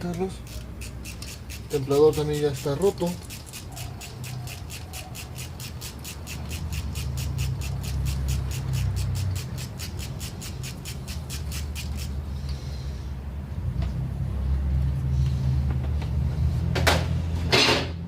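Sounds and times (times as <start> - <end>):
ratchet wrench clicking: 0.1 - 12.6.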